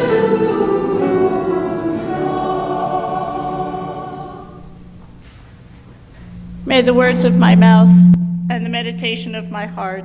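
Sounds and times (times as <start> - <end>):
church choir singing: 0.0 - 5.1.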